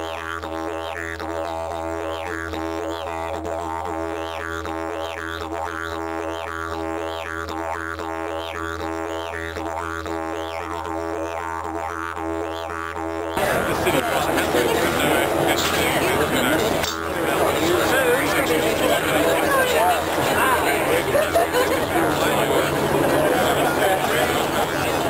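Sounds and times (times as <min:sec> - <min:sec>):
didgeridoo drone: 0:00.0 - 0:25.0.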